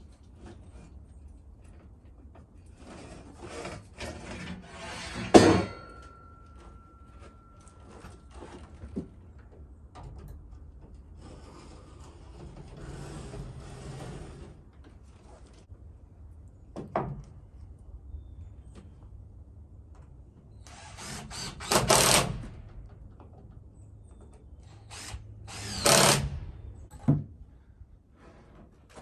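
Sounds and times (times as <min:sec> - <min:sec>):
rough scraping strokes: 0:02.8 - 0:05.4.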